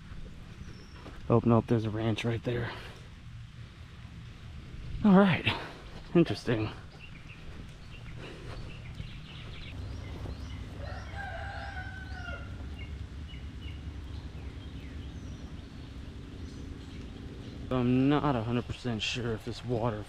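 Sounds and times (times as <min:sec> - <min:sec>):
small birds chirping: 0:00.0 - 0:20.0
rooster crowing: 0:10.4 - 0:12.9.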